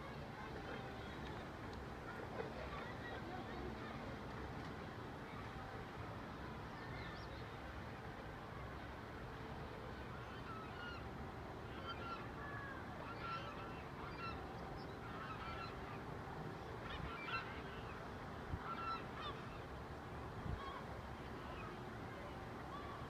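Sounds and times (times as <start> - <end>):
birds honking: 13.0 - 16.0.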